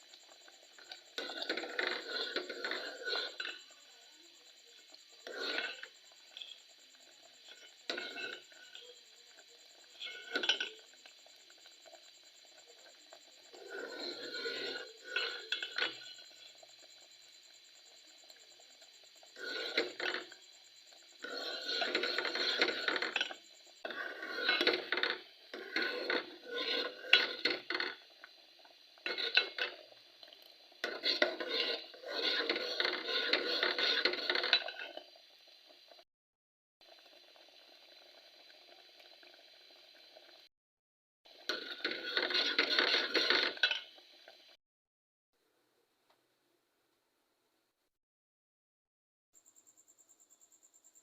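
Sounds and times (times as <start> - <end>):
spoon scraping cookware: 0.8 - 3.8, 5.1 - 6.6, 7.4 - 9.0, 9.8 - 10.9, 13.2 - 16.4, 19.3 - 20.4, 21.2 - 28.0, 29.0 - 29.8, 30.8 - 35.0, 41.5 - 43.9.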